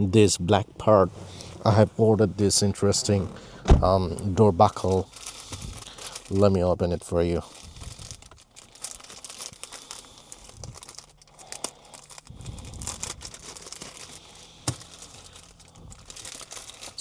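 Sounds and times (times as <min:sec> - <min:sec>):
wrapping crinkling and tearing: 0:04.6 - 0:17.0.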